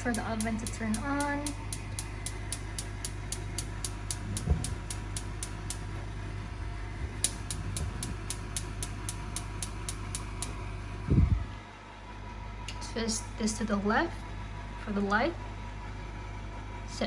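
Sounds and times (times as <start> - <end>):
oven spark igniter clicking: 0.0 - 5.9, 7.2 - 10.6
steady low hum: 0.0 - 17.0.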